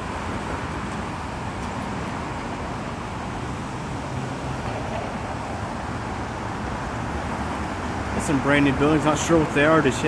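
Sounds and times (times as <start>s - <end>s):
city traffic noise: 0.0s - 10.0s.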